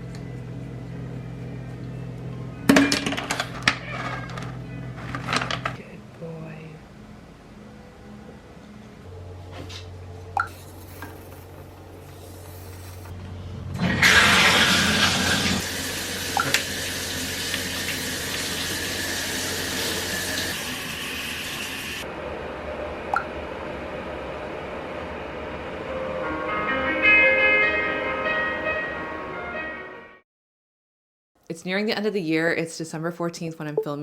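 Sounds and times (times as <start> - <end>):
steady low hum: 0.0 - 3.7
water running from tap: 14.0 - 22.0.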